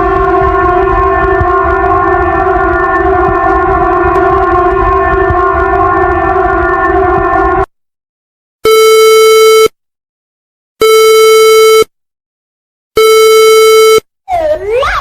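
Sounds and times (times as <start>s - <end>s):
multi-tone alarm: 0.0s - 7.7s, 8.7s - 9.7s, 13.0s - 14.0s
wailing siren tone: 0.0s - 7.7s.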